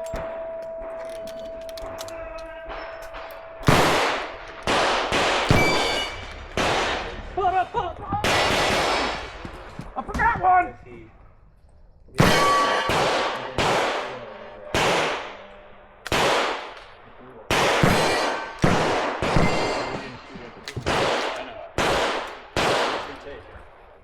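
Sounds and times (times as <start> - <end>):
revolver gunshots: 2.6 - 7.5, 8.2 - 9.7, 12.2 - 23.4.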